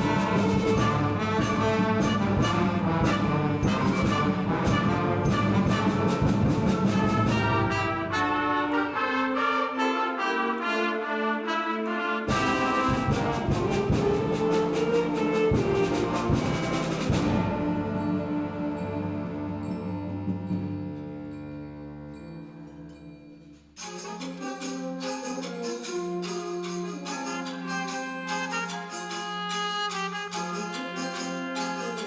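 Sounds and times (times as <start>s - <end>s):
concert band playing: 0.0s - 9.6s, 12.3s - 19.9s.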